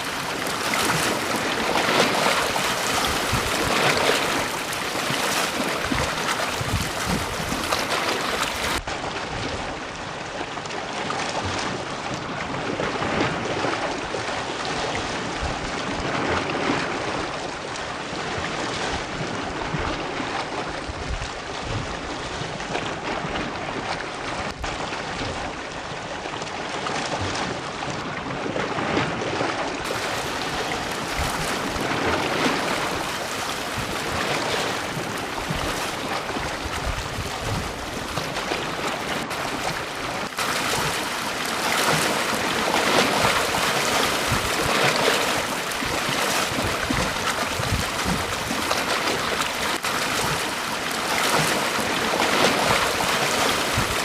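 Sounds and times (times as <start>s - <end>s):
sea waves breaking on beach: 0.0s - 54.0s.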